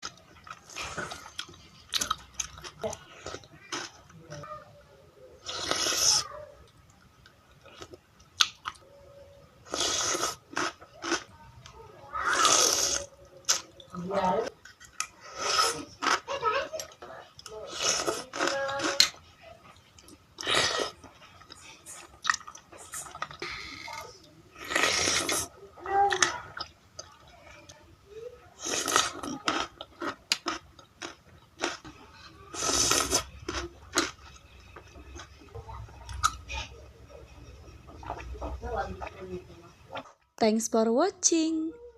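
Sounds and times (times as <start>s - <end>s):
wet chewing and crunching: 0.0s - 4.4s, 7.2s - 8.8s, 9.6s - 23.7s, 28.6s - 36.7s
noodle slurping: 5.4s - 6.3s, 9.6s - 10.8s, 12.2s - 13.6s, 24.6s - 25.5s, 32.5s - 33.3s.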